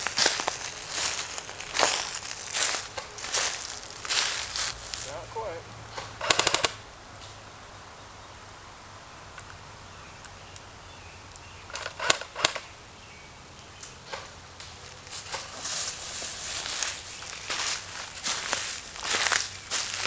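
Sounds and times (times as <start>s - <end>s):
footsteps rustling through brush: 0.0s - 5.6s, 14.6s - 20.0s
sharp snaps: 6.0s - 7.4s, 11.3s - 12.6s.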